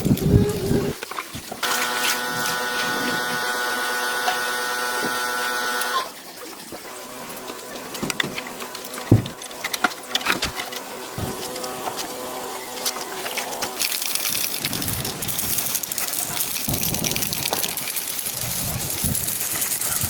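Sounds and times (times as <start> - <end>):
electric motor humming: 1.6 - 6.2.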